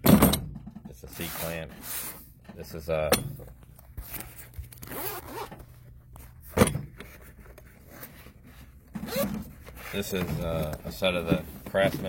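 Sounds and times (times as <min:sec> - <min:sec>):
zipper being drawn: 0:04.8 - 0:05.5, 0:09.1 - 0:09.4.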